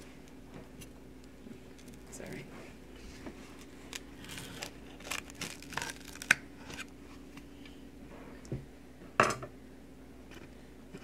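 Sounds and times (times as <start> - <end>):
pizza crinkling and scraping: 0.0 - 7.6.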